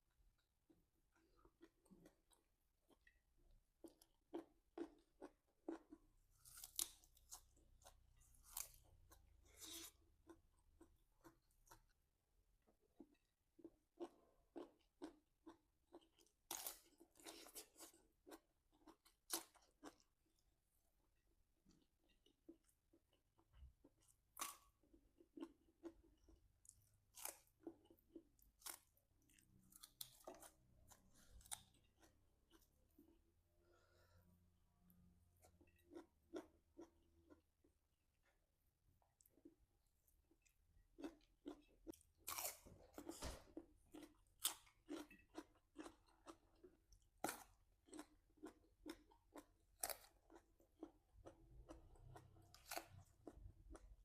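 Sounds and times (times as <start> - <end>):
crunching raw vegetables: 40.2 - 54.0.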